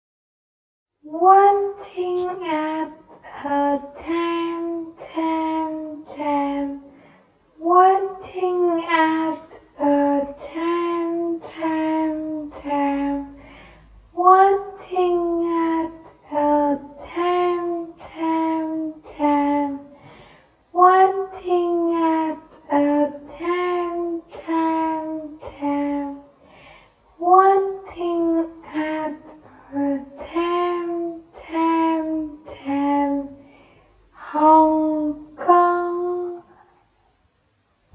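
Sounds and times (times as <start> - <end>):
high childlike voice singing: 7.6 - 13.4, 14.2 - 19.9, 20.8 - 26.3, 27.2 - 33.4, 34.2 - 36.5.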